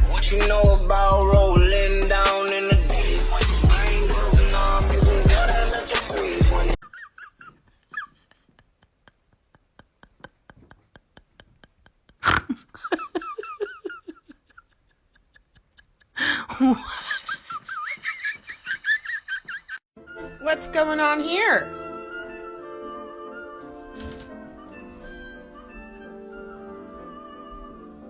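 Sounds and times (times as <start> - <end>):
person laughing: 6.8 - 19.8.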